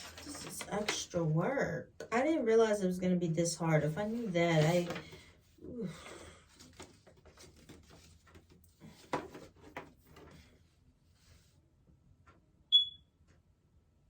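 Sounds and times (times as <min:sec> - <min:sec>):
short high electronic beep: 0:12.7 - 0:13.0.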